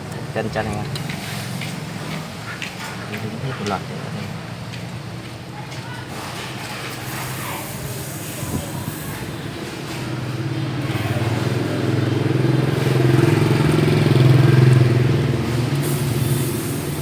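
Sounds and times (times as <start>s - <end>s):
motorbike engine passing by: 0.0s - 3.2s, 8.8s - 17.0s.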